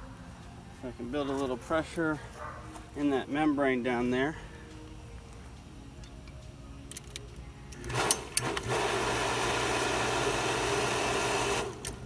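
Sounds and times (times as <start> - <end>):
water pump humming: 7.6 - 12.0.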